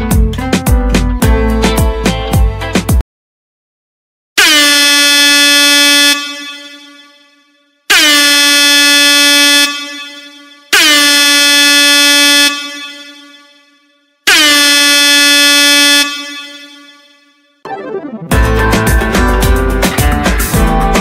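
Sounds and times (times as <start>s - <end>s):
air horn blasts: 4.4s - 17.5s.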